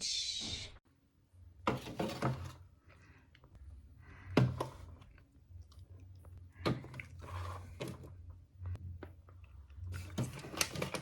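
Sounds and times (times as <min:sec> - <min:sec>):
items knocking and clattering: 0:01.6 - 0:02.6, 0:10.0 - 0:11.0.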